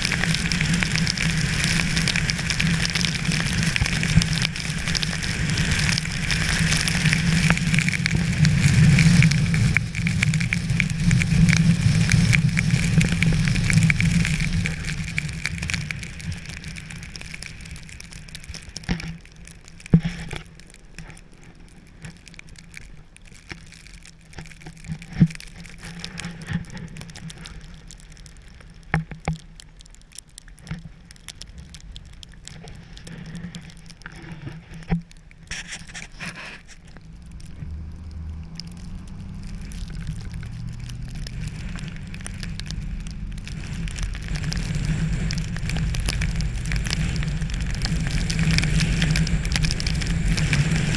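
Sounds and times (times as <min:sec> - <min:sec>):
rain pattering: 0:00.0 - 0:50.9
low rumble: 0:36.8 - 0:50.9.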